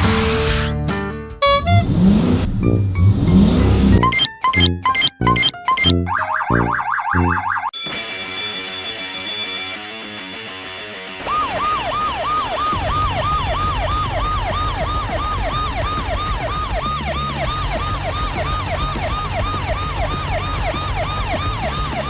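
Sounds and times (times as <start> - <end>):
emergency vehicle siren: 1.4 - 4.0, 6.1 - 8.2, 11.2 - 22.0
low steady rumble: 1.4 - 4.0.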